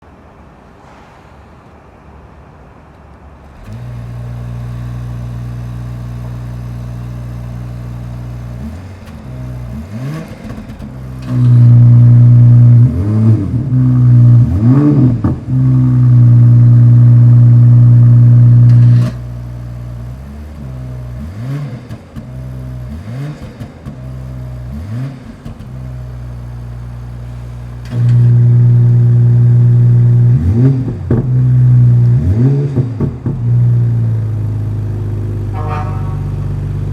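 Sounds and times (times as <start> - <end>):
car engine starting and idling: 0.2 - 36.9
engine throttle blips: 2.8 - 36.9.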